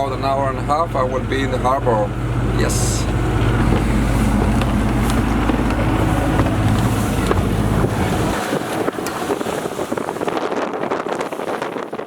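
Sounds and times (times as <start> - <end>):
boat engine running: 0.0 - 12.0
waves slapping against hull: 0.0 - 12.0
wind noise on microphone: 2.3 - 12.0.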